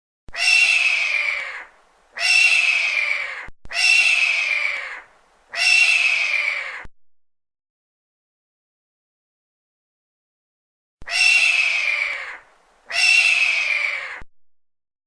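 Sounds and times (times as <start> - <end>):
hawk screaming: 0.3 - 6.9, 11.0 - 14.2.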